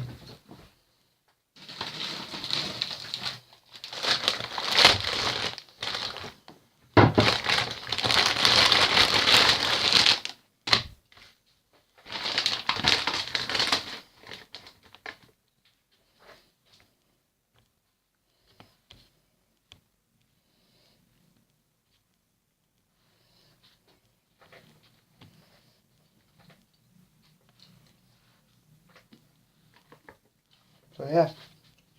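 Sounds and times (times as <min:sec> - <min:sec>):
packaging crinkling and rustling: 0:01.6 - 0:15.4.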